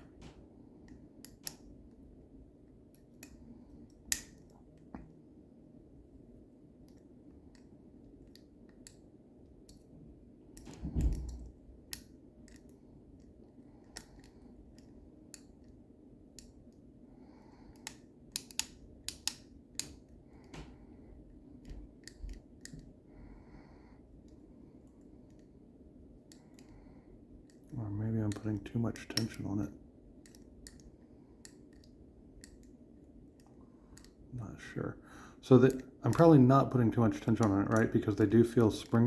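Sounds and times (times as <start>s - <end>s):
lock pick metallic clicks: 2.9s - 4.5s, 17.7s - 20.7s, 28.3s - 29.6s, 30.2s - 34.2s.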